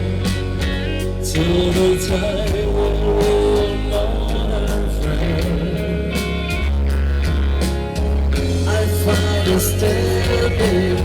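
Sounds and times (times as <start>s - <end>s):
person singing: 0.0s - 6.8s, 8.5s - 11.0s
pop-rock band music: 0.0s - 11.0s.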